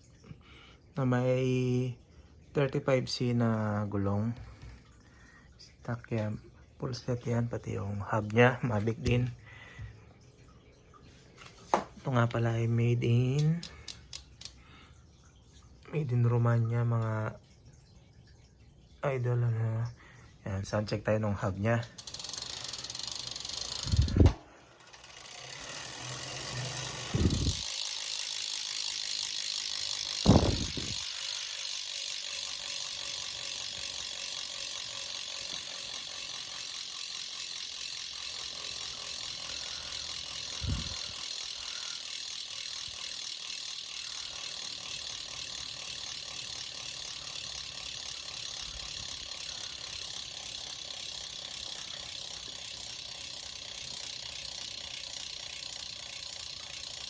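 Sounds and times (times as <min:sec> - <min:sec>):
bicycle hub ticking buzz: 0:13.2 - 0:14.7, 0:21.8 - 0:57.0.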